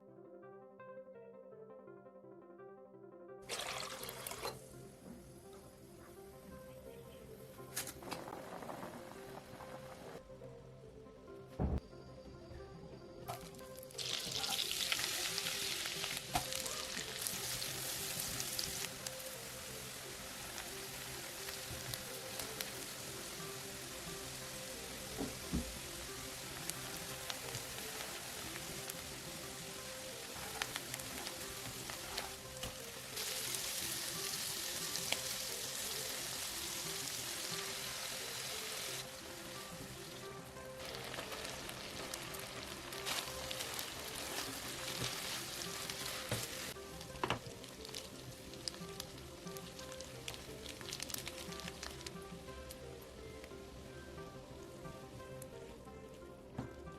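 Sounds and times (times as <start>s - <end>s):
soft background music: 0.0s - 56.9s
food sizzling in hot oil: 3.5s - 6.4s, 7.7s - 10.2s, 13.3s - 55.1s.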